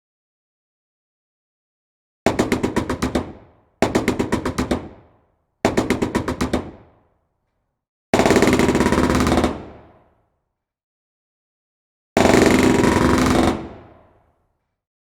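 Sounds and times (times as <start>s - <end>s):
machine gun firing: 8.2s - 9.8s, 12.2s - 13.9s.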